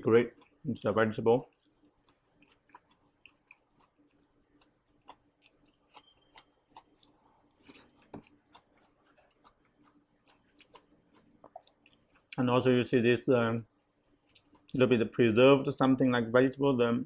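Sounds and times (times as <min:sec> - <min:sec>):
person chewing crunchy food: 0:00.2 - 0:00.7, 0:01.4 - 0:12.4, 0:13.7 - 0:14.9.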